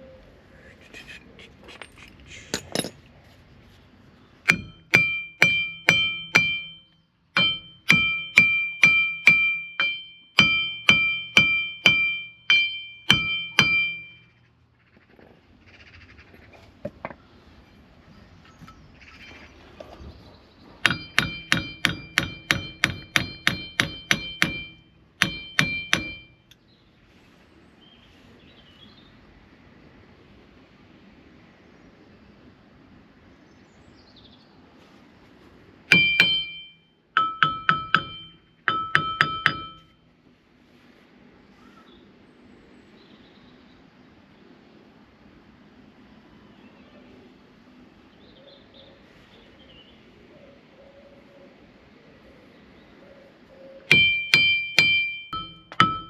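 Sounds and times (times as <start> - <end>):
hammer striking steel: 4.4 - 14.3, 20.8 - 26.6, 35.9 - 40.0, 53.9 - 56.0.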